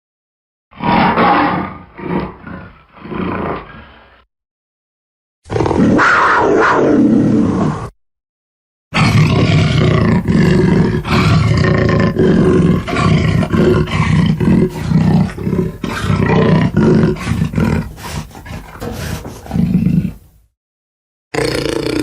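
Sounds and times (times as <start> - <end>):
deep growling roars: 9.0 - 20.2.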